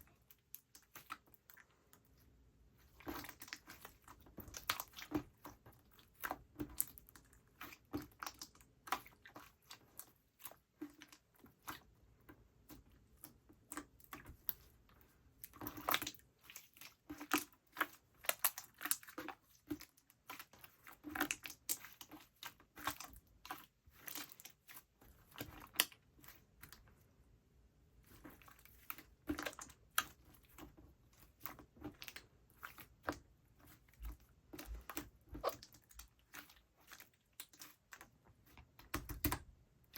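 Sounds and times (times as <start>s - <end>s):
slime squeezed by hand: 35.3s - 35.8s.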